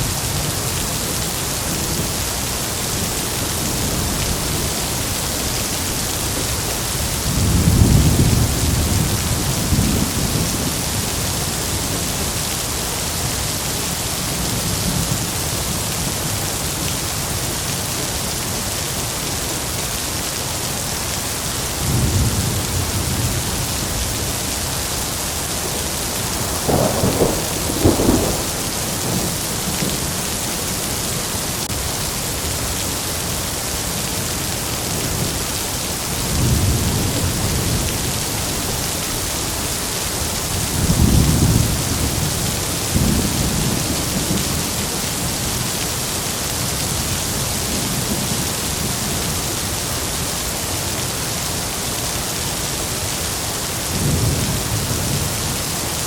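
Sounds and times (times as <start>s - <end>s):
heavy rain: 0.0s - 56.0s
thunder rumbling: 2.8s - 11.9s, 25.3s - 31.6s
sharp thunder crack: 26.3s - 30.2s.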